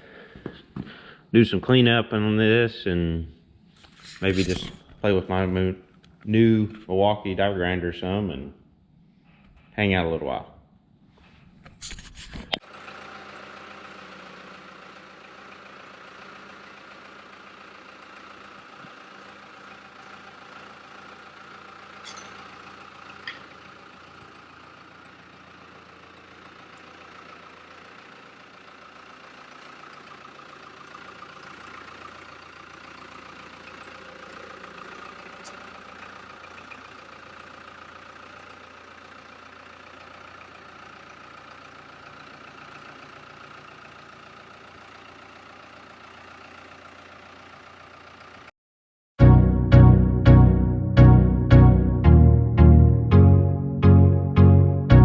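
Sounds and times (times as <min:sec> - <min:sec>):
die grinder running: 0:12.6 - 0:38.6.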